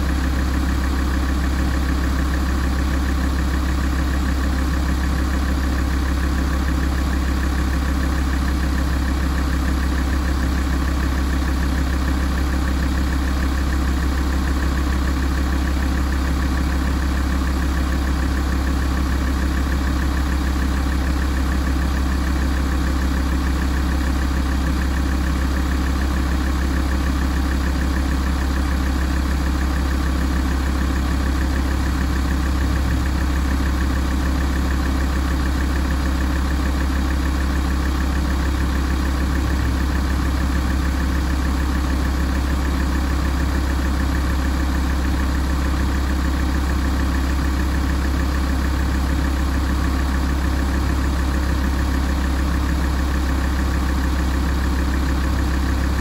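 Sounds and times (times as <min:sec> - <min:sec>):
diesel engine idling: 0:00.0 - 0:56.0.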